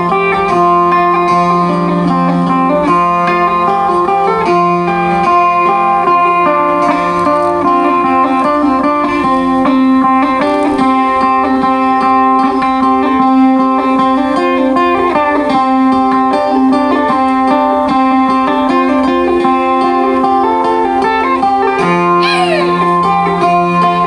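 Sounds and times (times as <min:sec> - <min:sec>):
plucked lute melody: 0:00.0 - 0:24.0
held drone tones: 0:22.2 - 0:23.2.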